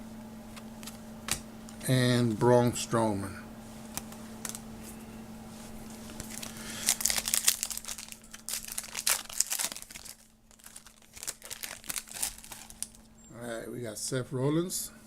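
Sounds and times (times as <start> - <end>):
faint steady hum: 0.0 - 15.0
wrapper crinkling and tearing: 6.0 - 13.1.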